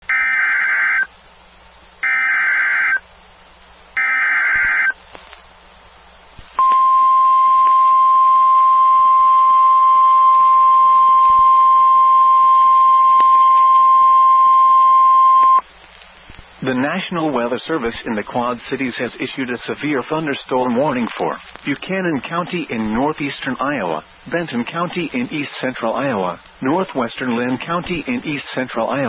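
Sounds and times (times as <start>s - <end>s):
steady high alarm tone: 2.0s - 3.0s, 4.0s - 4.9s
digital data tone bursts: 4.0s - 5.0s.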